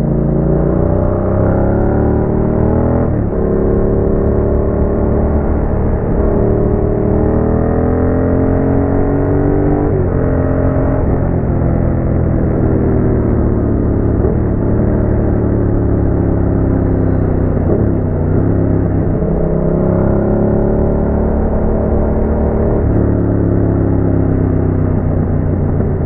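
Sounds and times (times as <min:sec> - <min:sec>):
motorcycle engine revving: 0:00.0 - 0:26.0.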